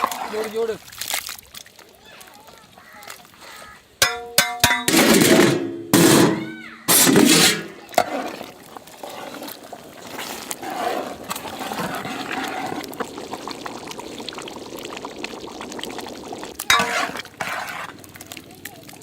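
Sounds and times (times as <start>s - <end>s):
liquid pouring into pot: 6.8s - 19.0s.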